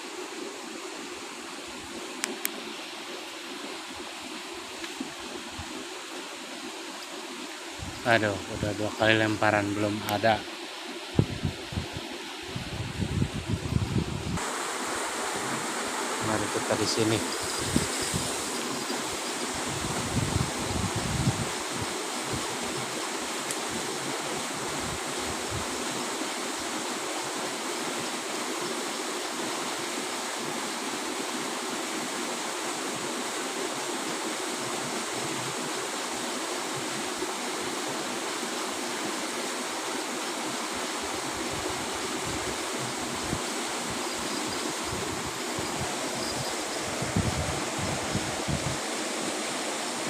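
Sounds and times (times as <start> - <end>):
river water rushing over rocks: 14.4 - 50.0.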